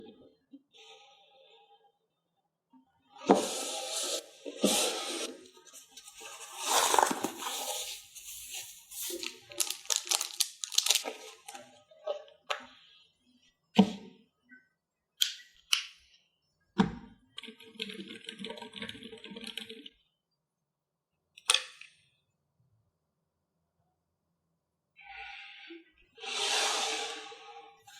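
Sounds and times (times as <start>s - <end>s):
packaging rustling: 5.7s - 11.7s.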